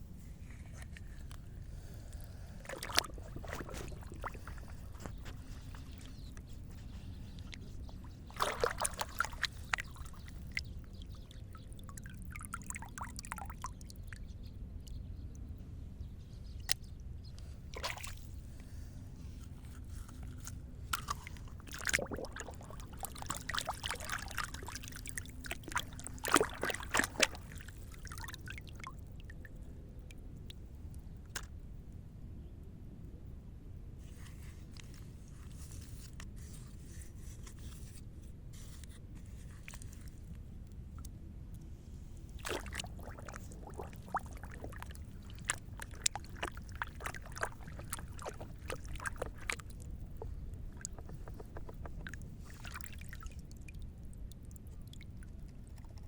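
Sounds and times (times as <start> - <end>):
water sloshing and trickling: 0.1 - 15.1, 16.6 - 31.6, 34.0 - 56.0
steady low hum: 37.9 - 56.0.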